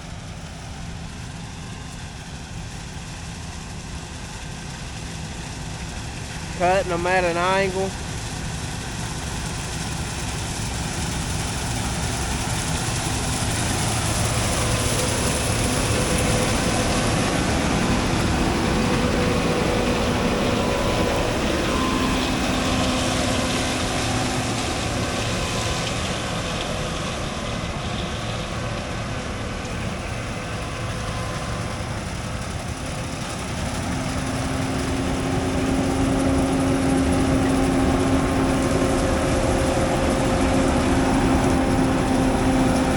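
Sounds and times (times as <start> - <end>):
diesel machinery droning: 0.0 - 42.9
humming tones: 13.9 - 28.3.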